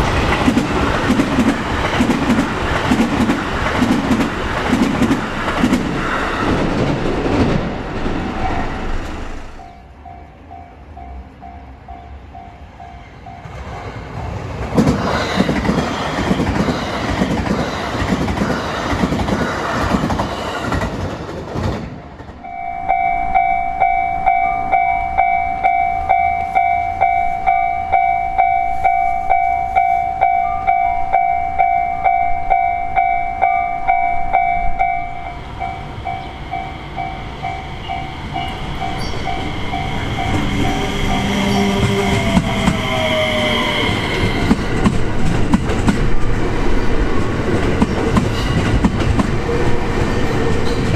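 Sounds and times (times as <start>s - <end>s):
electric trains running past: 0.0s - 50.9s
level crossing warning bell: 22.4s - 42.8s.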